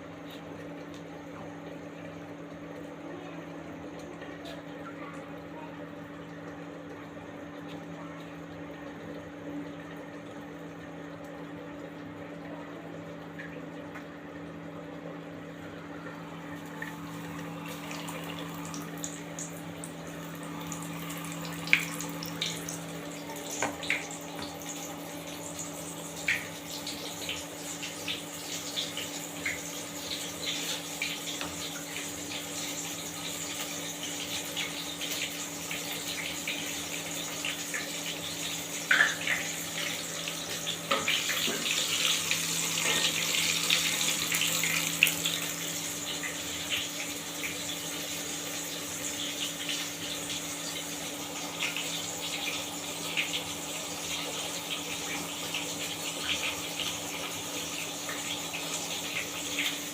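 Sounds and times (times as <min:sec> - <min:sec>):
tap water running into sink: 0:16.4 - 0:59.9.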